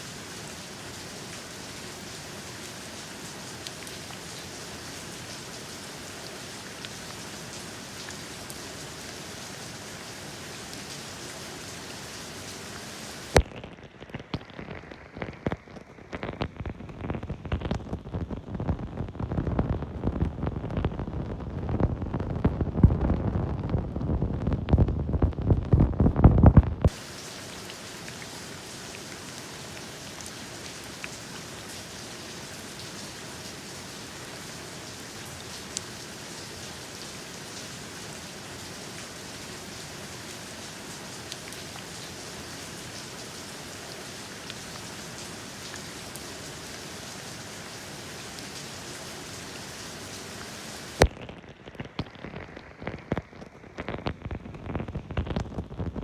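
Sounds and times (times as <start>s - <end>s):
steady rain falling: 0.0s - 56.0s
uneven gusty rumble: 21.3s - 26.9s.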